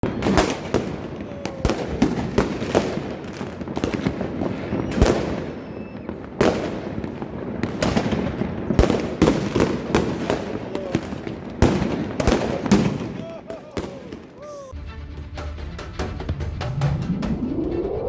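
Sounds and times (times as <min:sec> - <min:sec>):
sharp bangs and pops: 0:00.0 - 0:14.4.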